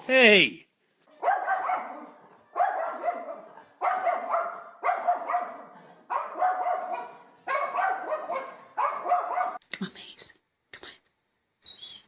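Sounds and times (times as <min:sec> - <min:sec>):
dog barking: 0:01.1 - 0:09.6.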